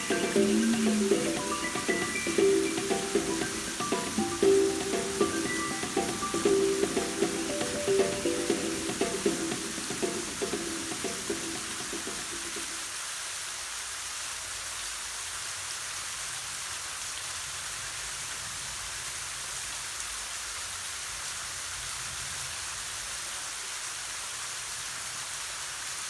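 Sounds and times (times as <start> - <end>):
sustained music tones: 0.0 - 12.8
waterfall rushing: 0.0 - 13.2.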